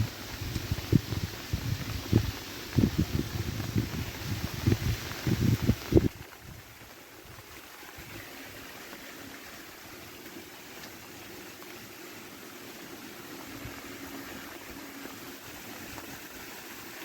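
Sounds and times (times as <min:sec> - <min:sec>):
stream water rushing: 0:00.0 - 0:17.0.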